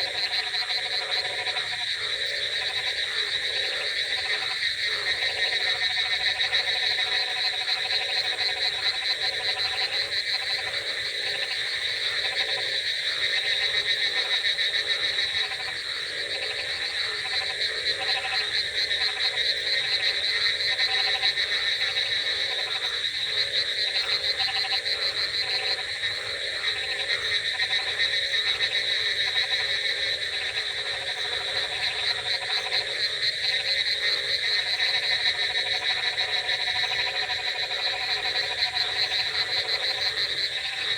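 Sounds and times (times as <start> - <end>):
frogs croaking: 0.0 - 40.9
frogs trilling: 0.0 - 40.9.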